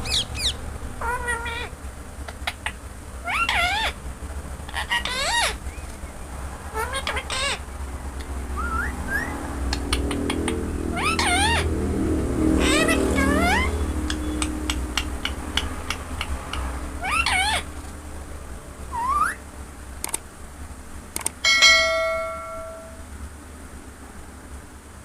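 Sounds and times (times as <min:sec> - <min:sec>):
parrot meow-like calls: 0:00.0 - 0:01.7, 0:03.2 - 0:04.0, 0:06.7 - 0:07.6, 0:10.9 - 0:11.7, 0:12.5 - 0:13.9, 0:17.0 - 0:17.6, 0:18.9 - 0:19.4.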